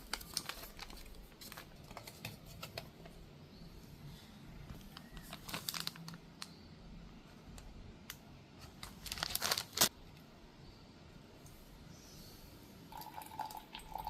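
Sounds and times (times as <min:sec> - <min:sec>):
packaging crinkling: 0:00.0 - 0:02.9, 0:04.8 - 0:06.6, 0:08.6 - 0:09.9.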